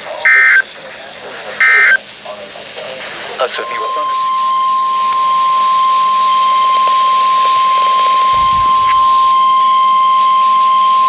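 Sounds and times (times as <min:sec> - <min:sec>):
faint radio static: 0:00.0 - 0:04.3, 0:06.5 - 0:09.4
loud steady alarm beep: 0:00.2 - 0:00.7, 0:01.6 - 0:02.0, 0:03.6 - 0:11.0.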